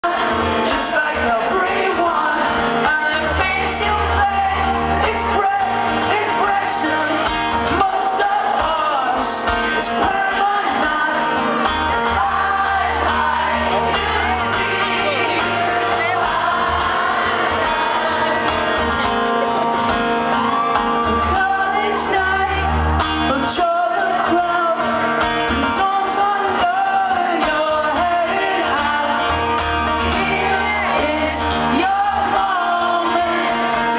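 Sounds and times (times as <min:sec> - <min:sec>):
man singing with guitar: 0:00.0 - 0:33.9
audience shouting and whooping: 0:03.4 - 0:24.4, 0:29.4 - 0:33.9.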